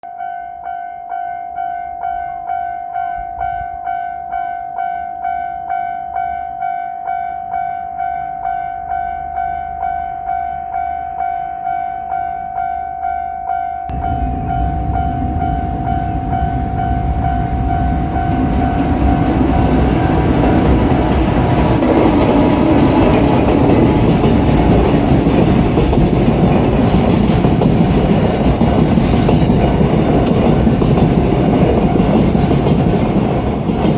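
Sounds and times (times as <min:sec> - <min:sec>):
level crossing warning bell: 0:00.0 - 0:33.9
freight train rumble: 0:13.9 - 0:33.9
train wheels clattering: 0:13.9 - 0:33.9.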